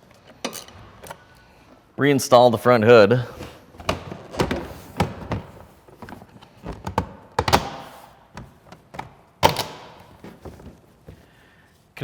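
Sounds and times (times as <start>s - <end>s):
plastic hood thunks and clicks: 3.8s - 11.2s.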